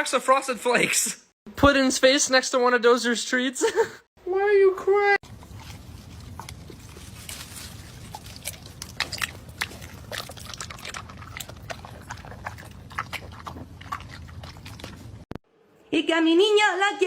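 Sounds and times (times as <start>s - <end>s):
dog snuffling and chewing: 5.2s - 15.4s.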